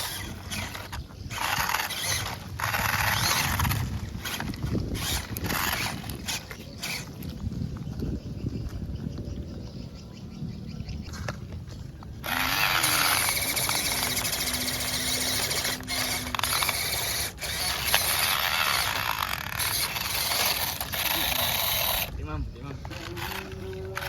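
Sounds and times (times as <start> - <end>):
toy truck motor whining: 0.0 - 7.3, 12.2 - 24.0.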